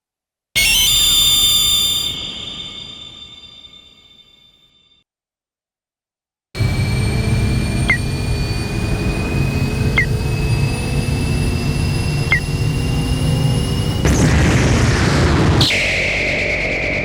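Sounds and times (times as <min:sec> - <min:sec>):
short chirping ping: 0:00.6 - 0:04.5
low rumbling drone: 0:06.6 - 0:17.0
thin high rising tones: 0:06.6 - 0:17.0.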